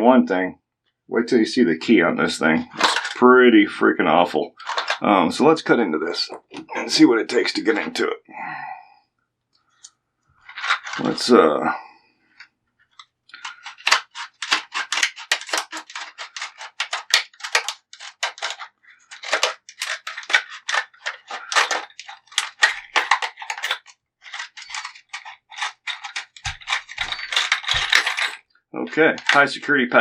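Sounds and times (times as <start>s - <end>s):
plastic packaging being cut: 13.4s - 18.6s, 19.2s - 28.1s.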